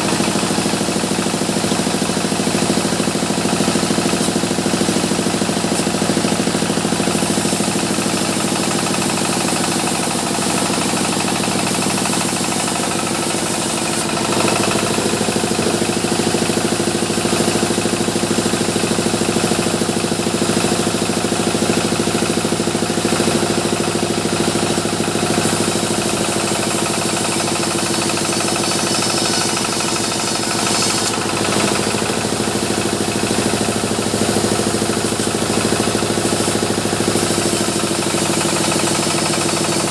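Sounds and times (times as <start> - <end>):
sawmill machinery droning: 0.0 - 39.9.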